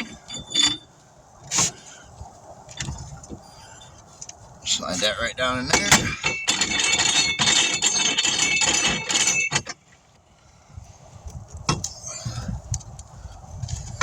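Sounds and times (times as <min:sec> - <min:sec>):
metal clinking and scraping: 0:00.0 - 0:01.8, 0:05.7 - 0:10.0.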